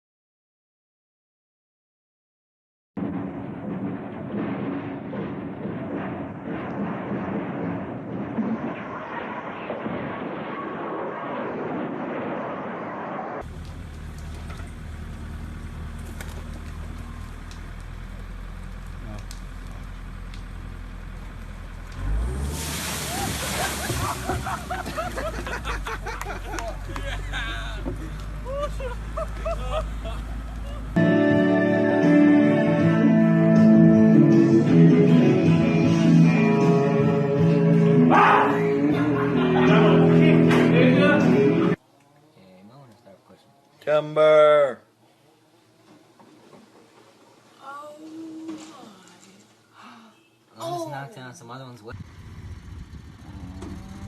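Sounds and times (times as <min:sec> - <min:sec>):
engine humming: 0:13.4 - 0:38.1, 0:51.9 - 0:54.0
plucked guitar: 0:31.0 - 0:38.1
person singing: 0:31.0 - 0:41.8.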